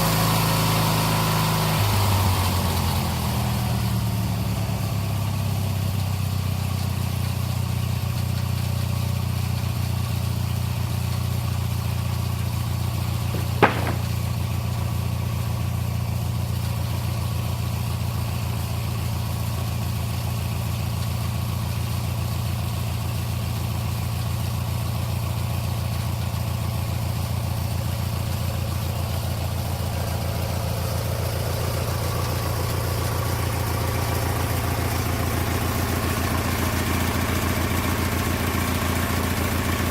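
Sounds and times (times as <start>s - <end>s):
lawn mower engine running: 0.0s - 39.9s
sharp knock: 13.4s - 14.4s.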